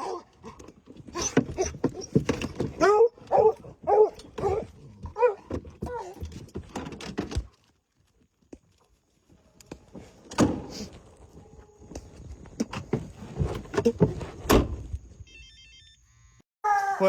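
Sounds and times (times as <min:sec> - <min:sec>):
hounds barking: 0:02.8 - 0:06.1.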